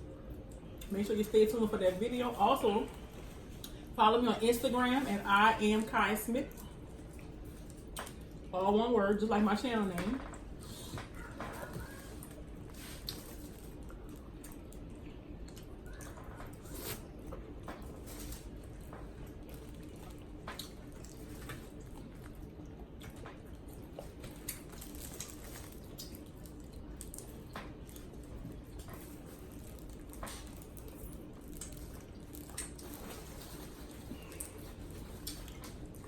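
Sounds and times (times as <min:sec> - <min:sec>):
wet chewing and squishing: 0:06.4 - 0:08.5, 0:10.4 - 0:36.0.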